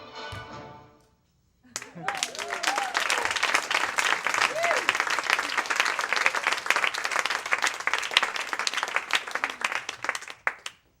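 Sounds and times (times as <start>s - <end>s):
audience applauding: 1.7s - 10.8s.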